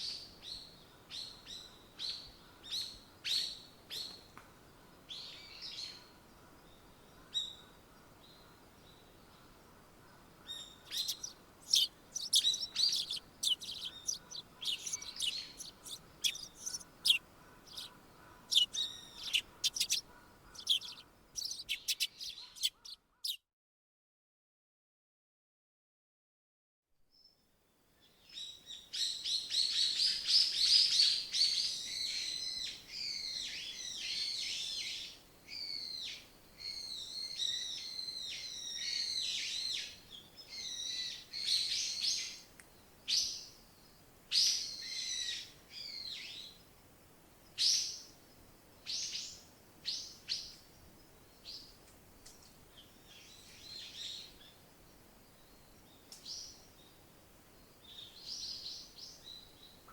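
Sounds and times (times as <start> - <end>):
songbirds warbling and trilling: 5.0 - 23.4.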